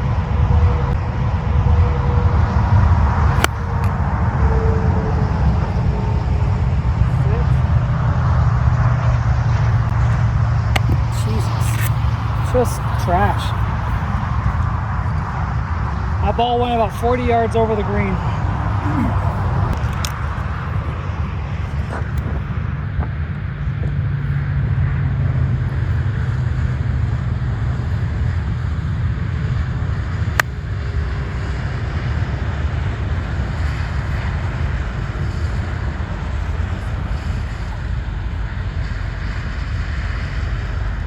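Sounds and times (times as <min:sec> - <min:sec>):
wind buffeting microphone: 0:00.0 - 0:41.0
golf cart rumbling: 0:00.7 - 0:22.3.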